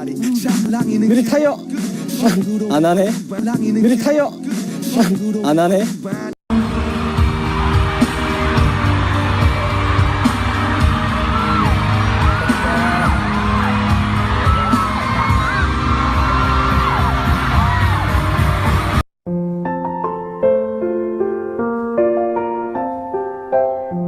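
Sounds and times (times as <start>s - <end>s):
pop music with steady beat: 0.0s - 19.0s.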